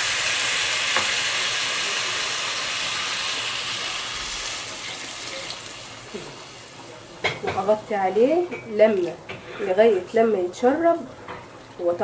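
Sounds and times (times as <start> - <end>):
water sizzling in hot pot: 0.0 - 9.2.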